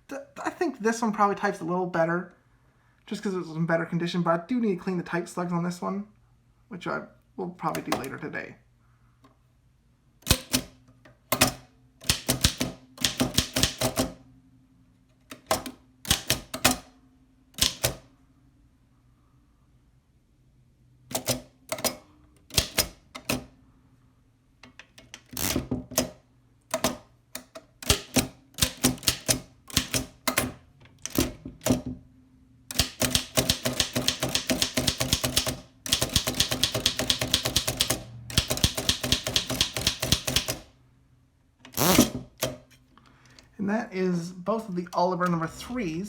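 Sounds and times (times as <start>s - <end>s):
typewriter keystrokes: 10.2s - 14.2s, 15.3s - 16.9s, 17.6s - 18.0s, 21.1s - 23.5s, 25.4s - 31.8s, 32.7s - 40.7s.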